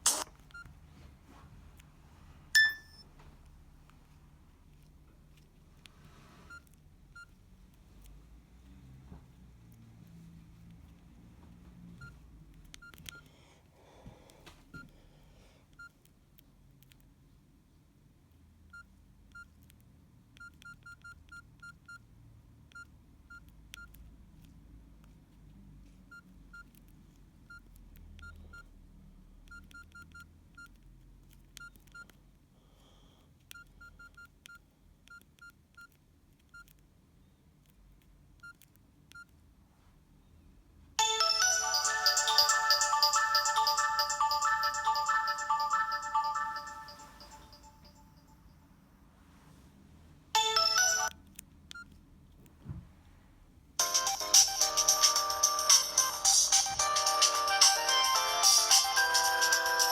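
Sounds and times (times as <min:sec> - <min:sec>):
phone keypad beeps: 0:02.6 - 0:03.1, 0:20.4 - 0:22.1, 0:41.0 - 0:48.2, 0:50.4 - 0:52.0.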